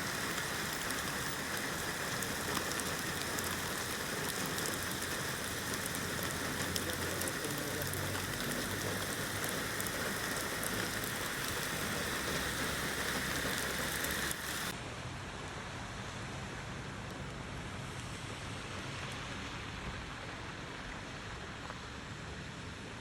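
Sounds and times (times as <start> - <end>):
steady rain falling: 0.0 - 14.8.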